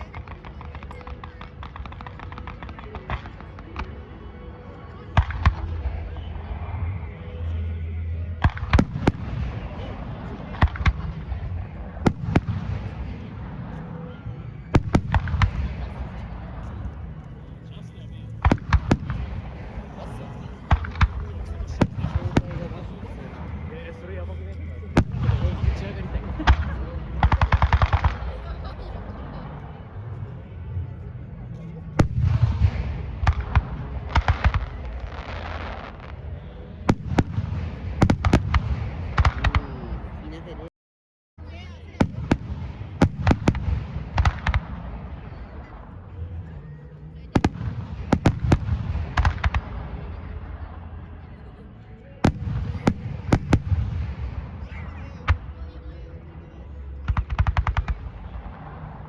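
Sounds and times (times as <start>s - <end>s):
steady low rumble: 0.0s - 40.7s
fireworks bangs: 18.4s - 28.4s, 36.9s - 39.9s, 42.0s - 45.6s, 47.4s - 50.0s, 52.2s - 54.8s.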